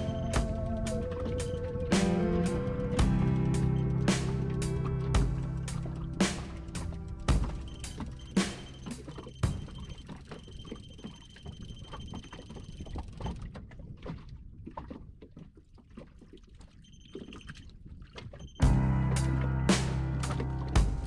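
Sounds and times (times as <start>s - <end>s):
water sloshing against boat hull: 4.2s - 21.0s.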